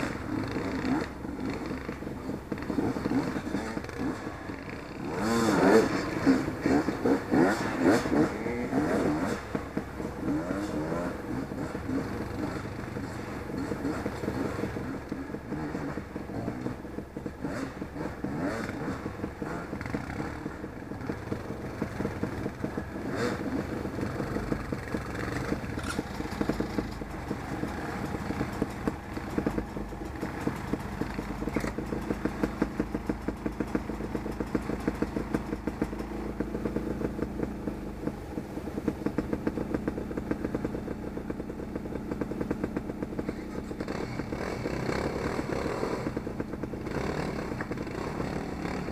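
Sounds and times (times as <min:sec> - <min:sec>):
off-road motorcycle engine revving: 0:00.0 - 0:48.9
sharp clacks: 0:00.0 - 0:48.9.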